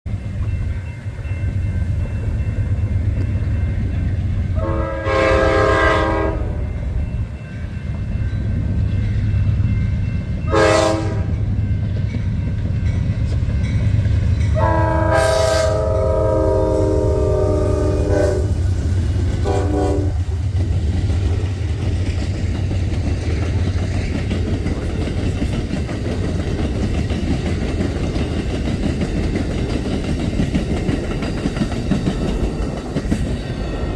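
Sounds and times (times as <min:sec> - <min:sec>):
locomotive air horn chord: 0:04.6 - 0:06.8, 0:10.5 - 0:11.4, 0:14.6 - 0:18.6, 0:19.4 - 0:20.3.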